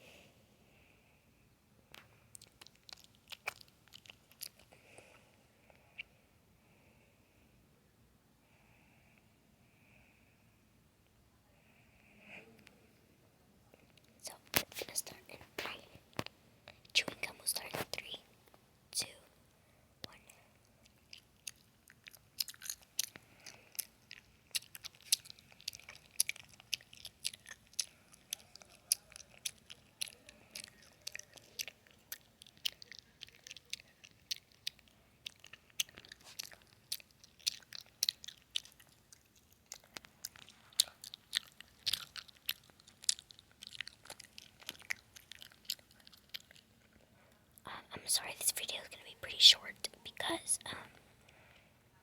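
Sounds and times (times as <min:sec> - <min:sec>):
gum chewing mouth clicks: 0:01.9 - 0:05.1, 0:13.9 - 0:18.2, 0:20.0 - 0:51.4.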